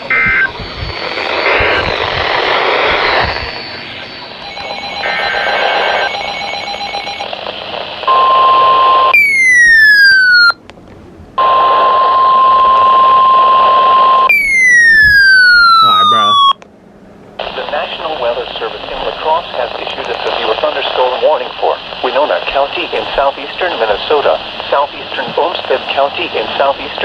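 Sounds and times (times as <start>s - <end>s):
short beeps: 0.0s - 2.0s, 3.2s - 7.3s
falling electronic sweep: 0.0s - 6.2s
pulsed tone: 0.0s - 7.3s
radio static hiss: 0.0s - 9.2s, 11.4s - 14.3s, 15.7s - 16.5s, 17.4s - 27.0s
loud steady alarm tone: 0.0s - 10.6s, 11.4s - 16.6s.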